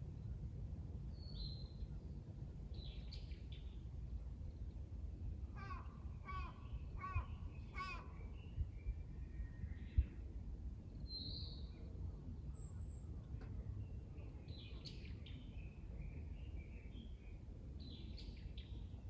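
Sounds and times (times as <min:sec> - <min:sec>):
steady low rumble: 0:00.0 - 0:19.0
wild birds chirping and calling: 0:05.6 - 0:08.1.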